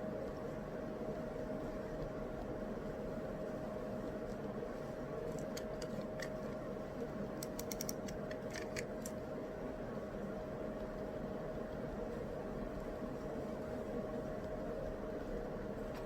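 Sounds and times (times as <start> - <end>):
faint hum: 0.0 - 16.0
white noise hiss: 0.0 - 16.0
light sharp clicks and taps: 7.4 - 9.2.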